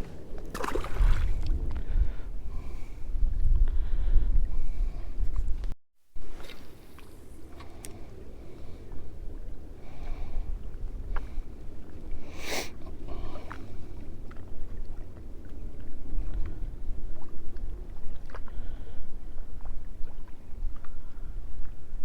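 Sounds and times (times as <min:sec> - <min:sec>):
wind buffeting microphone: 0:00.0 - 0:06.4, 0:07.2 - 0:22.0.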